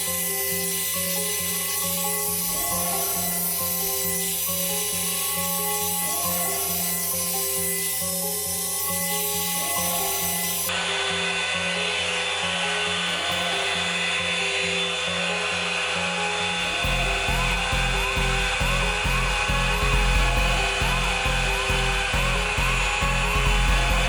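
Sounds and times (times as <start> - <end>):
hair dryer brush whining: 0.0 - 24.0
background music with bass beat: 16.6 - 24.0.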